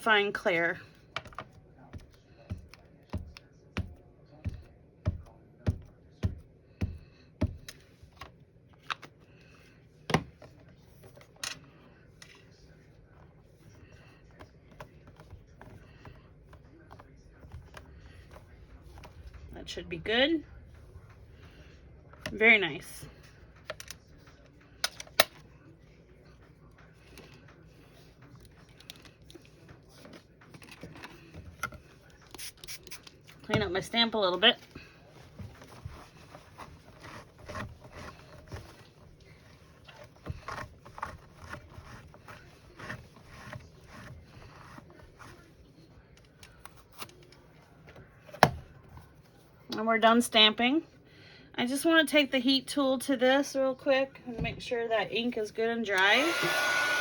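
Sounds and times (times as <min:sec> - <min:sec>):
paper rustling and tools tapping: 0:01.0 - 0:19.4, 0:26.3 - 0:49.8.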